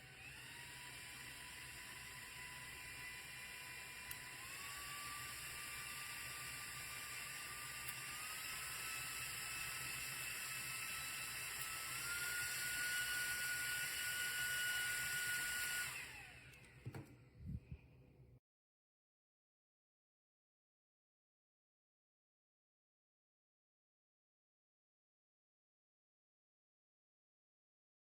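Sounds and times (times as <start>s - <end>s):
portable fan motor whine: 0.0s - 17.2s.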